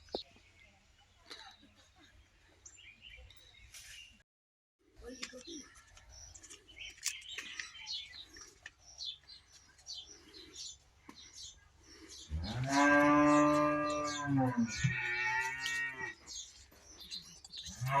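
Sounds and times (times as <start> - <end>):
small birds chirping: 0.0 - 4.2, 4.8 - 18.0
cow mooing: 12.4 - 16.2.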